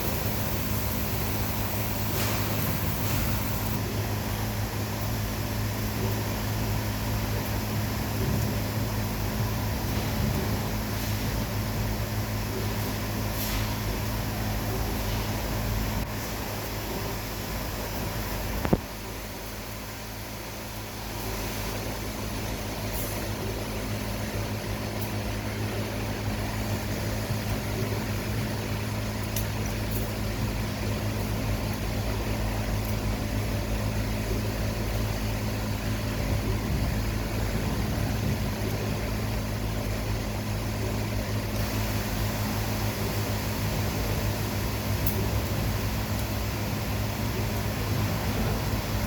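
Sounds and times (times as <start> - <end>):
even hiss: 0.0 - 3.8
low machine hum: 0.0 - 49.0.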